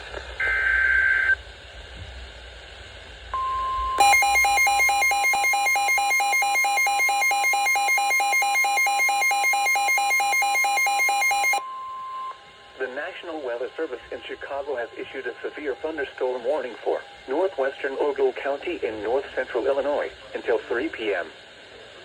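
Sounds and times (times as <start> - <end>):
steady warning tone: 3.4 - 19.8
digital header data burst: 4.0 - 11.6
rapidly pulsing alarm tone: 4.0 - 12.4.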